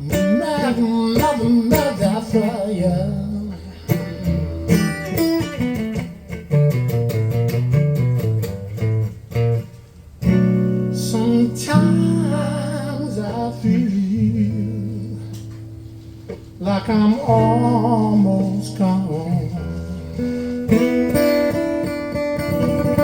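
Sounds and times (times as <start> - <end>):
person singing: 0.0 - 5.0, 11.0 - 15.6, 16.6 - 20.2
blues guitar: 0.0 - 23.0.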